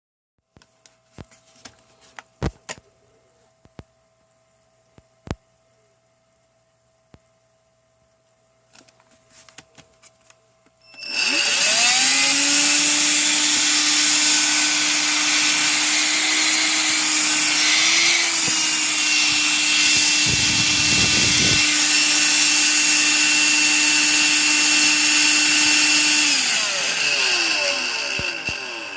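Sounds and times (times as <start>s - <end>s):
vacuum motor whining: 10.8s - 28.9s.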